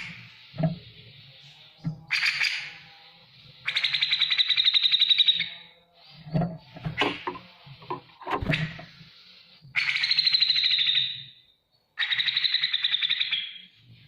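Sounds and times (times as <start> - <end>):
harsh bird calls: 6.8 - 11.4.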